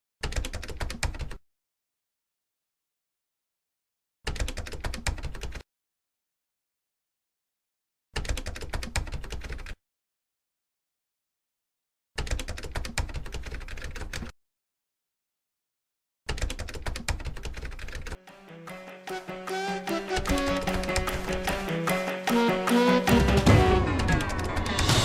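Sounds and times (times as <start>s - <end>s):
rapid typing clicks: 0.2s - 1.4s, 4.3s - 5.6s, 8.2s - 9.8s, 12.2s - 14.3s, 16.3s - 18.2s
background music: 18.2s - 25.0s.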